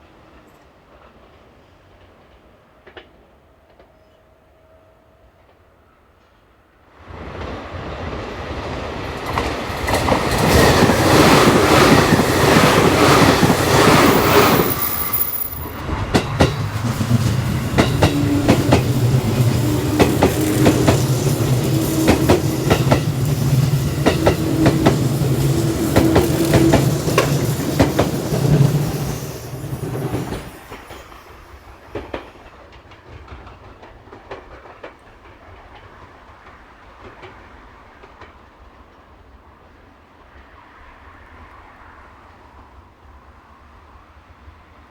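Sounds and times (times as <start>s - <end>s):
electric train passing: 6.9s - 44.9s
wheels clacking over rail joints: 9.1s - 31.2s.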